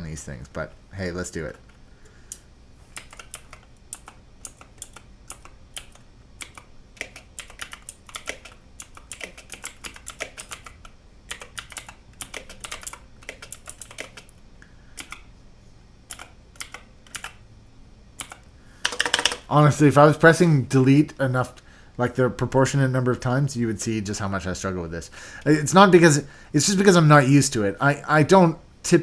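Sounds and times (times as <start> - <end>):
mechanical keyboard typing: 2.9 - 14.3, 15.0 - 15.2, 16.1 - 17.4, 18.2 - 19.5.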